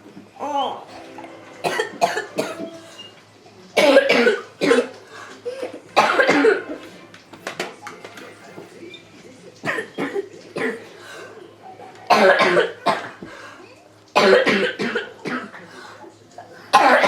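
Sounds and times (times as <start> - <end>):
child coughing: 1.6 - 2.9, 3.8 - 6.8, 9.6 - 10.9, 12.1 - 13.2, 14.2 - 15.6, 16.7 - 17.0.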